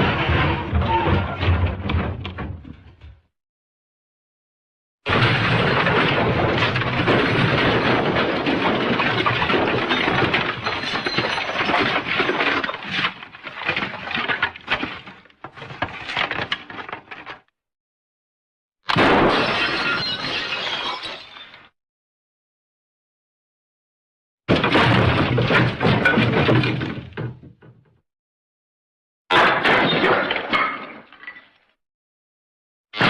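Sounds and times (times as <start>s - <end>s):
glass and debris smashing: 5.1s - 15.0s, 18.9s - 21.7s, 29.3s - 31.6s.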